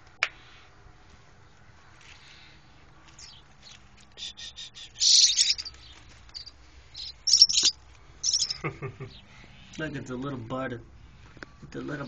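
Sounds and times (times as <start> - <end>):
baby bird chirping: 4.1 - 8.6.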